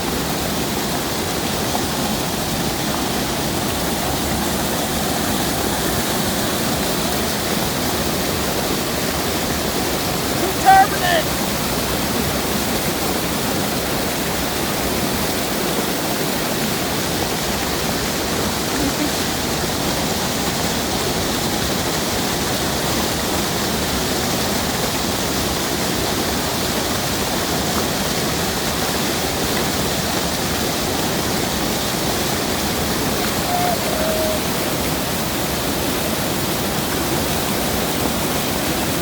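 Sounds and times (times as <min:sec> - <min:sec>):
waterfall rushing: 0:00.0 - 0:12.0, 0:25.9 - 0:39.0.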